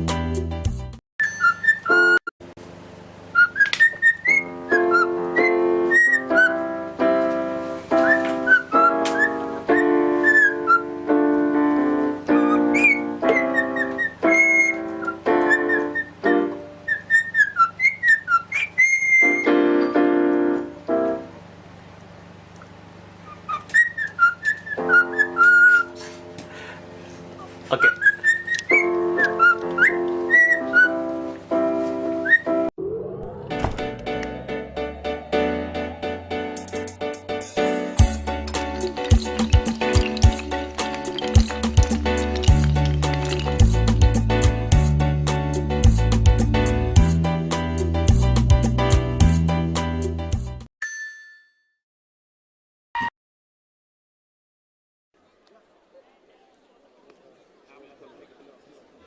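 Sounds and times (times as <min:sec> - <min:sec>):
canary chirping and singing: 0:01.4 - 0:02.2, 0:03.4 - 0:06.7, 0:08.0 - 0:10.9, 0:12.3 - 0:16.2, 0:16.8 - 0:19.5, 0:23.2 - 0:26.0, 0:27.8 - 0:31.1, 0:37.8 - 0:45.0
organ chords: 0:32.6 - 0:50.5.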